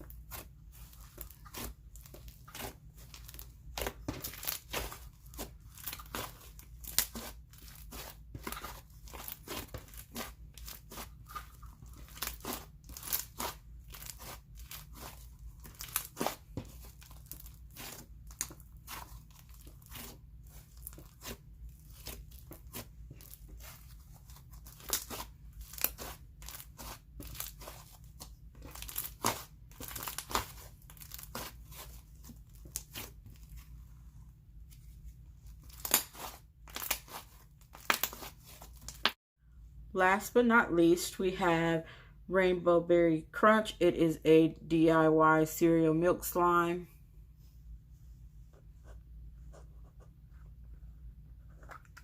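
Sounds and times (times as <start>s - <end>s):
slime crackling and popping: 0.3s - 33.2s, 35.7s - 39.2s.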